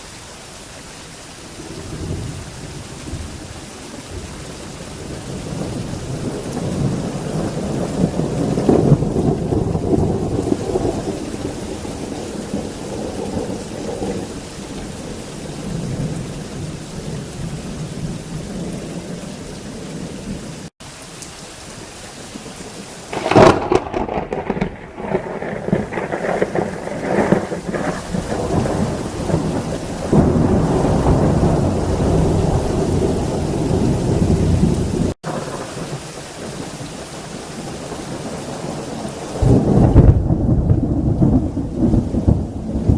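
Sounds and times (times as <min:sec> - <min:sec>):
heavy rain: 0:00.0 - 0:42.9
loud thunderclap: 0:05.0 - 0:14.3, 0:23.1 - 0:36.6, 0:39.4 - 0:42.9
thunder rolling: 0:05.0 - 0:20.4, 0:23.1 - 0:36.6, 0:38.1 - 0:42.9.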